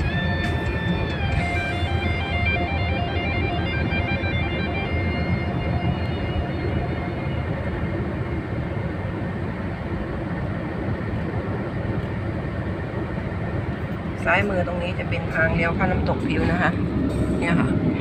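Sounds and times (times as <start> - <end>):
background music: 0.0 - 7.3
vehicle road noise: 0.0 - 18.0.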